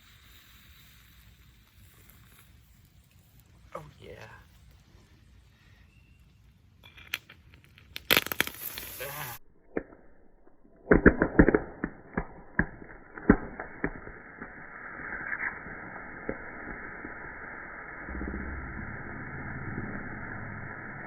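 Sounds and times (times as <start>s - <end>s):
molten metal spattering and popping: 6.8s - 18.0s
sharp loud cracks: 7.9s - 10.0s, 10.8s - 19.2s.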